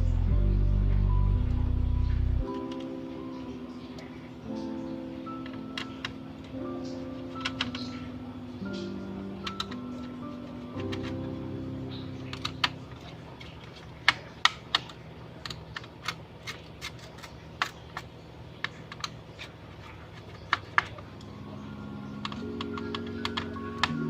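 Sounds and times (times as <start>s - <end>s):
soft background music: 0.0s - 24.0s
tools clicking on laptop parts: 7.3s - 8.0s, 10.8s - 11.2s, 12.2s - 21.0s.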